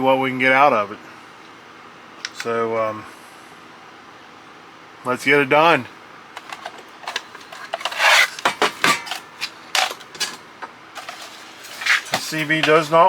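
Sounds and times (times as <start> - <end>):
radio scraping on a work surface: 6.4 - 9.6, 11.0 - 12.9.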